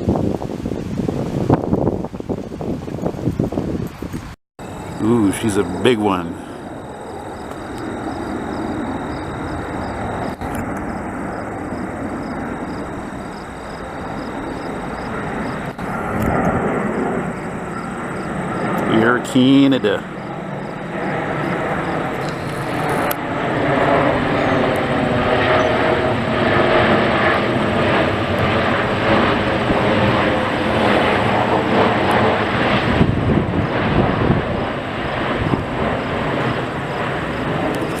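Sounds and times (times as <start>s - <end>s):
jet airliner engine roar: 0.0s - 38.0s.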